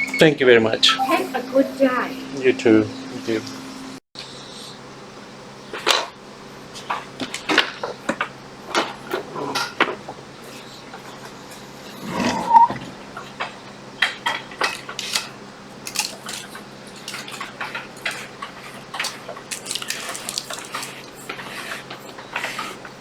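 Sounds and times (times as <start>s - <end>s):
small hard objects clicking: 15.8s - 17.3s.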